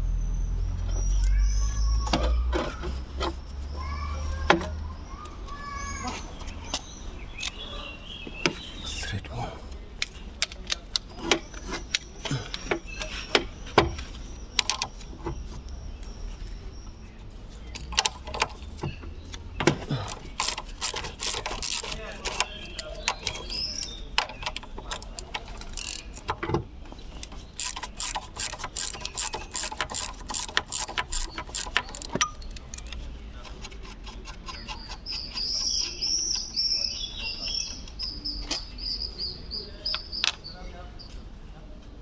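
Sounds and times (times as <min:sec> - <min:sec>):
high chirping: 0:20.2 - 0:26.3, 0:34.4 - 0:41.2
metal tools clicking and clattering: 0:27.6 - 0:33.0.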